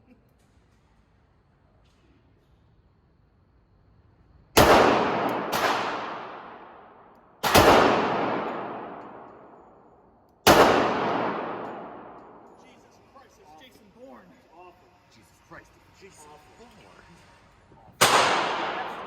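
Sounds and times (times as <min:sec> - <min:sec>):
pistol shots echoing: 0:04.6 - 0:12.7, 0:18.0 - 0:19.0.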